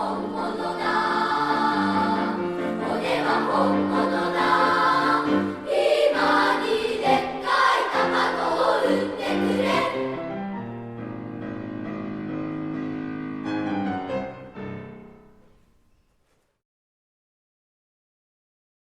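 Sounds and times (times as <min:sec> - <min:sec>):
children's choir singing: 0:00.0 - 0:10.2.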